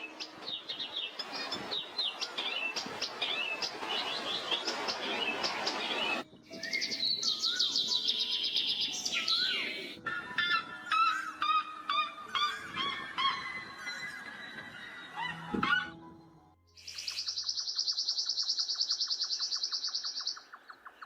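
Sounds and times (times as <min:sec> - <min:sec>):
steady hiss: 0:00.0 - 0:06.2
birds chirping and calling: 0:00.0 - 0:16.1, 0:16.8 - 0:21.0.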